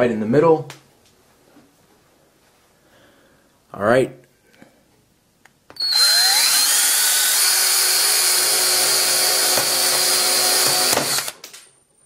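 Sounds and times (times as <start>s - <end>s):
cordless drill motor whine: 5.8s - 11.4s.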